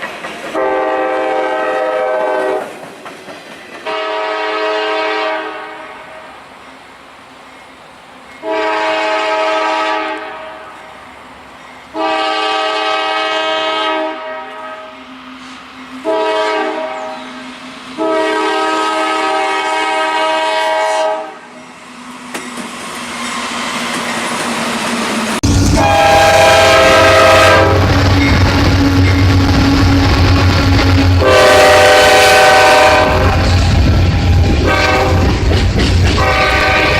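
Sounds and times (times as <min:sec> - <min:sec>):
train rumbling: 0:00.0 - 0:36.9
train horn blasts: 0:00.5 - 0:02.7, 0:03.8 - 0:06.3, 0:08.4 - 0:10.8, 0:11.9 - 0:15.0, 0:16.0 - 0:21.5, 0:25.4 - 0:35.4, 0:36.1 - 0:36.9.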